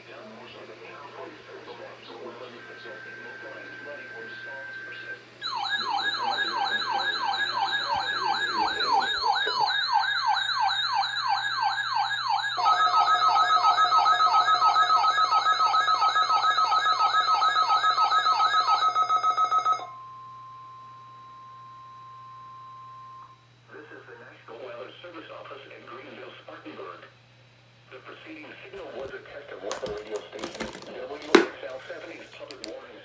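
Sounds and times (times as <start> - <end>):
quiet steady alarm tone: 2.1 - 23.6
electronic siren sweeping: 3.4 - 14.4.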